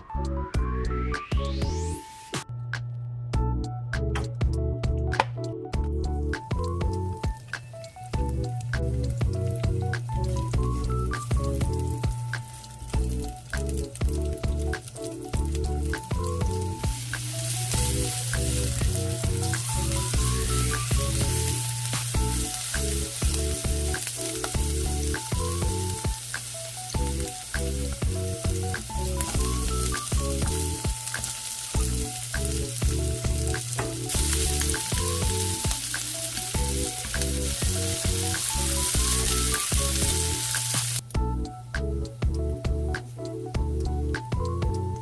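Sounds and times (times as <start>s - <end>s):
background music with bass line: 0.0s - 45.0s
food sizzling in a pan: 7.2s - 41.0s.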